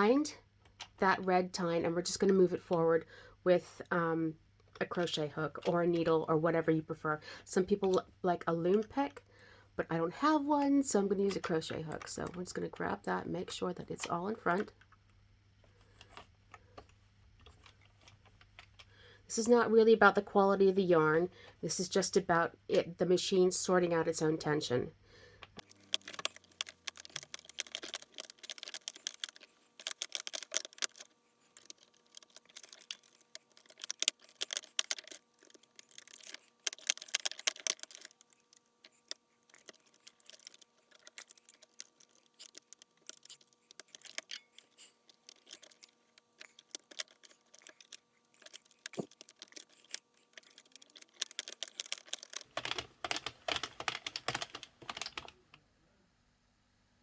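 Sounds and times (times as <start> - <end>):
knitting machine clattering: 25.6 - 55.4
needles clicking rapidly: 25.8 - 38.3, 38.9 - 55.3.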